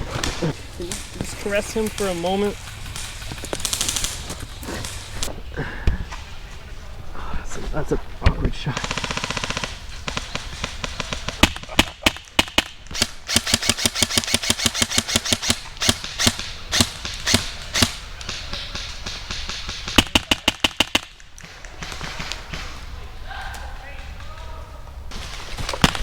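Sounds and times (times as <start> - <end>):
airsoft guns firing: 0.0 - 5.3, 8.7 - 23.0, 25.1 - 26.0.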